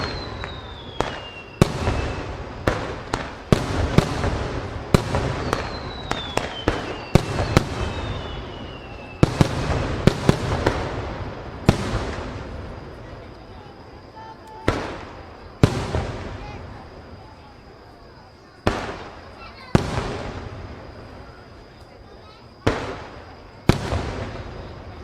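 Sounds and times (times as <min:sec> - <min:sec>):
fireworks bursting: 0:00.0 - 0:25.0
firework whistle gliding down: 0:05.3 - 0:09.5.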